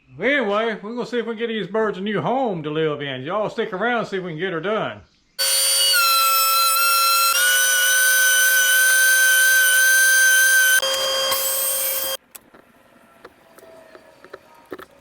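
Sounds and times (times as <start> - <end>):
power saw cutting wood: 5.4 - 12.2.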